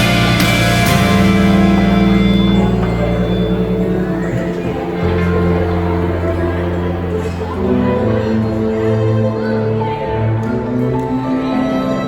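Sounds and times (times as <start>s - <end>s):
plucked string chords: 0.0s - 9.5s.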